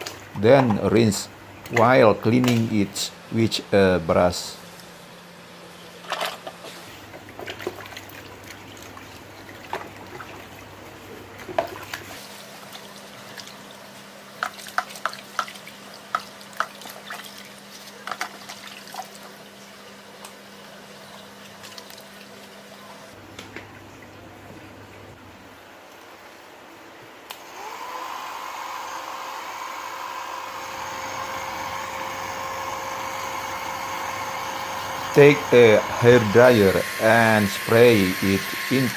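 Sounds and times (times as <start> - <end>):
water splashing in a basin: 7.2 - 10.7, 11.4 - 13.8, 14.4 - 19.6, 21.2 - 22.8
sharp water drips: 14.4 - 19.4
hair dryer blowing: 27.3 - 38.9.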